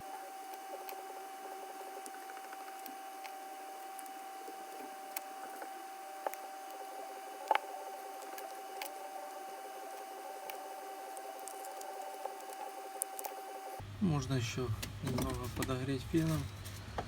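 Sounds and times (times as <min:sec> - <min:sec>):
plastic card scraping: 0:00.0 - 0:13.8, 0:14.8 - 0:17.0
steady faint whine: 0:00.0 - 0:16.8.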